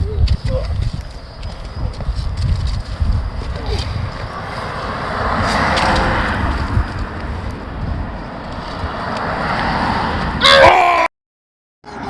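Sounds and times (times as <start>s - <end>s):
wind rumbling on microphone: 0.0s - 10.4s
road traffic hiss: 3.6s - 10.4s.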